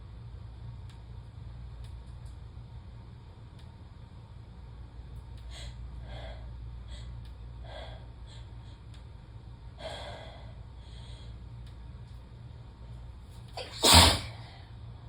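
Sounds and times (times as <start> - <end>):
steady low hum: 0.0 - 15.0
woman gasping and sniffing: 13.6 - 14.4.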